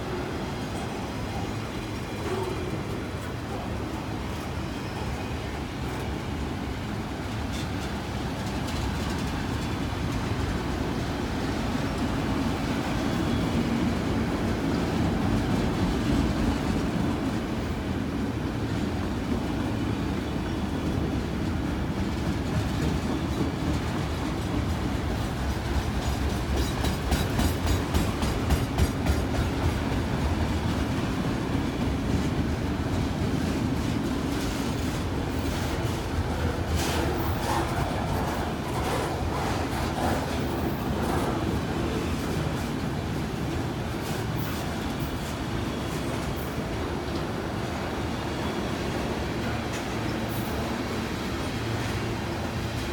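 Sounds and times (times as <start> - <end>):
freight train rumbling past: 0.0 - 52.9
wheels clacking over rail joints: 20.4 - 46.4.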